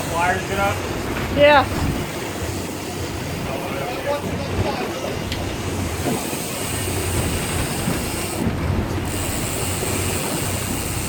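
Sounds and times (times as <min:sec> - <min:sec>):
boat engine running: 0:00.0 - 0:11.0.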